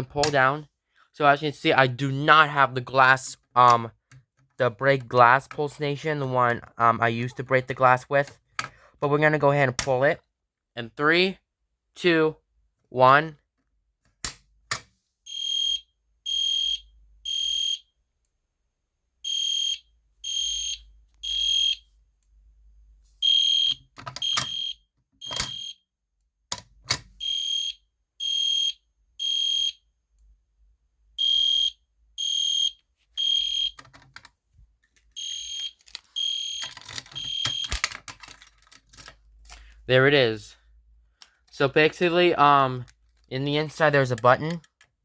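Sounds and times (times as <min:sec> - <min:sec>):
fire alarm horn blasts: 0:19.3 - 0:21.8, 0:23.2 - 0:25.8, 0:27.2 - 0:29.8, 0:31.2 - 0:33.8, 0:35.2 - 0:36.6.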